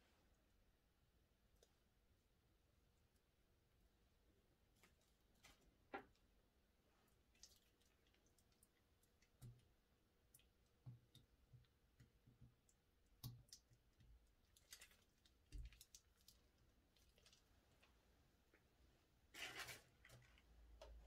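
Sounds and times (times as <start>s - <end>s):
faint clicks and soft taps: 7.0s - 18.8s.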